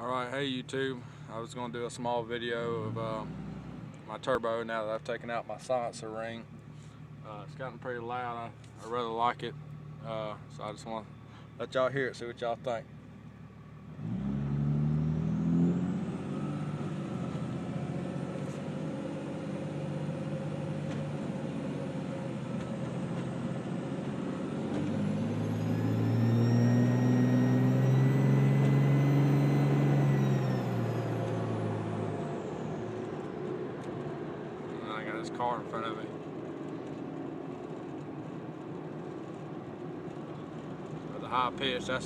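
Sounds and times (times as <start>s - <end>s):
diesel engine accelerating: 0.0s - 42.0s
turbocharger whistling: 24.3s - 33.2s.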